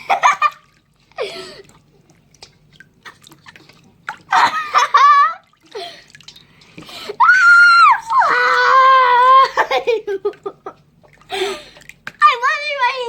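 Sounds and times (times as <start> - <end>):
child squealing: 7.2 - 9.6.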